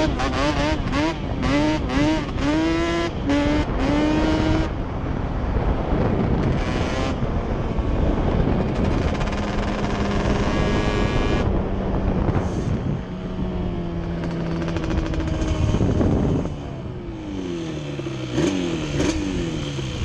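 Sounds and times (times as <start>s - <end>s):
two-stroke engine revving: 0.0s - 4.7s, 6.3s - 7.2s, 8.5s - 11.5s, 13.9s - 20.0s.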